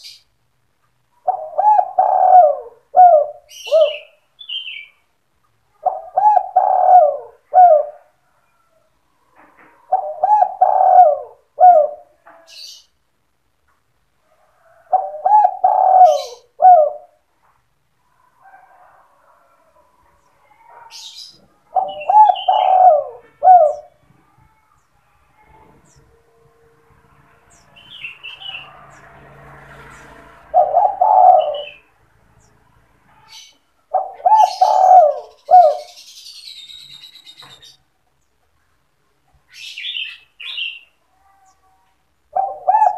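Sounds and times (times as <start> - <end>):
small birds chirping: 0.0 - 13.4, 14.6 - 18.2, 19.9 - 26.2, 29.8 - 42.9
dove cooing: 1.2 - 4.2, 5.7 - 8.7, 9.4 - 12.7, 14.6 - 17.2, 20.6 - 24.6, 30.1 - 31.9, 33.2 - 36.2, 42.3 - 42.9.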